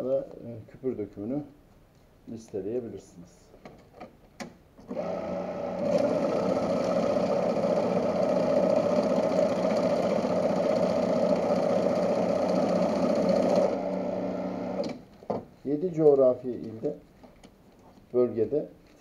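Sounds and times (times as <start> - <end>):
banknote counting machine running: 5.0 - 14.8.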